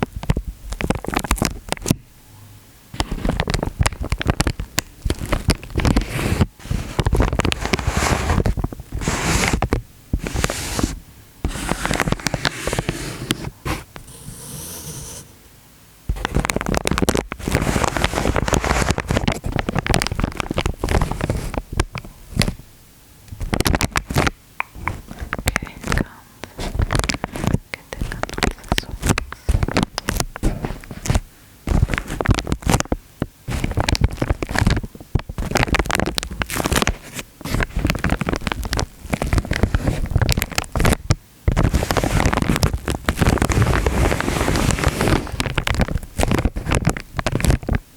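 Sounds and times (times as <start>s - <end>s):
crackling pops: 16.1s - 22.6s, 23.3s - 47.8s.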